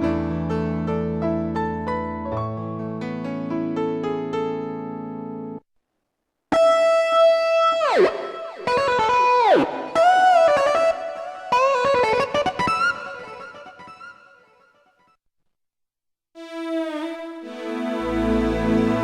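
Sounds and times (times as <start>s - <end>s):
synthesizer held chord: 16.4s - 19.0s
synthesizer lead notes with pitch bends: 16.4s - 19.0s.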